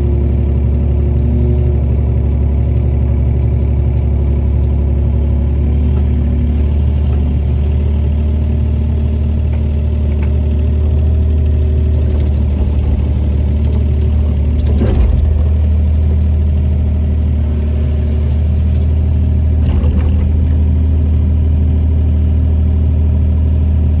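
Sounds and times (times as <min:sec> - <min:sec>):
diesel excavator engine running: 0:00.0 - 0:24.0
metal clank: 0:09.2 - 0:20.6.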